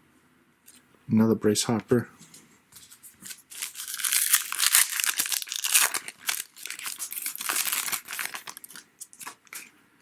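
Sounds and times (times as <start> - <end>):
card pack wrapper tearing and crinkling: 2.8 - 9.7.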